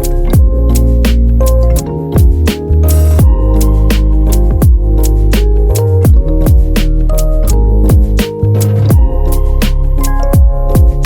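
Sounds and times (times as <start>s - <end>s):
electronic music with beat: 0.0s - 11.0s.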